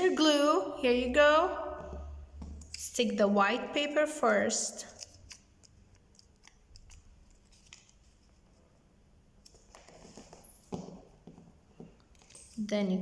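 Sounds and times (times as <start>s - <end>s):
paper clicks: 4.8s - 8.4s
craft paper rustling: 4.8s - 8.7s.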